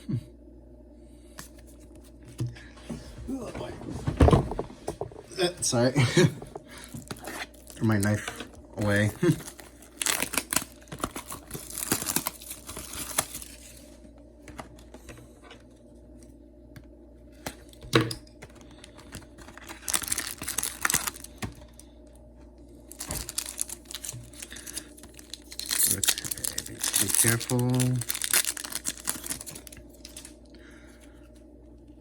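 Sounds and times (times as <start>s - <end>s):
foil wrappers crinkling and tearing: 6.8s - 14.0s, 18.4s - 21.8s, 22.9s - 30.4s.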